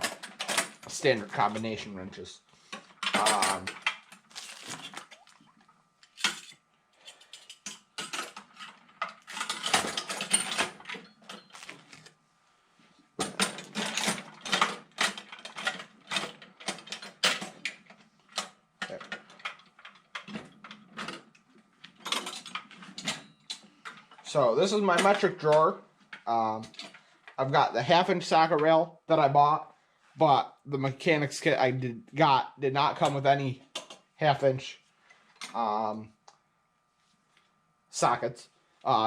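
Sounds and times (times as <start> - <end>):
metal tools clinking in a drawer: 0.0 - 0.9, 3.0 - 5.0, 6.1 - 12.0, 13.2 - 21.3, 21.9 - 24.2.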